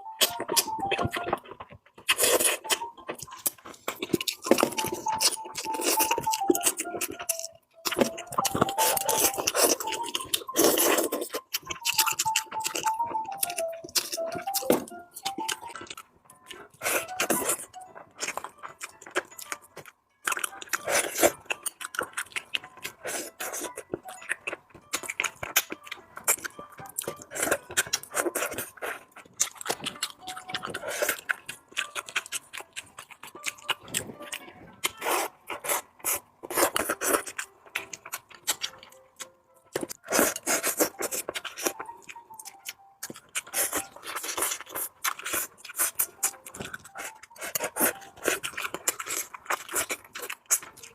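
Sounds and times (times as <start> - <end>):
chewing and mouth smacks: 0.1 - 50.9.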